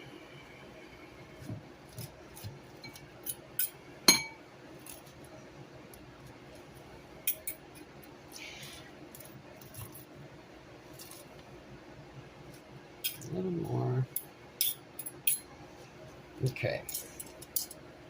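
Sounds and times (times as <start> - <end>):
kitchenware clinking: 2.8 - 4.4, 14.6 - 15.5, 16.9 - 17.8.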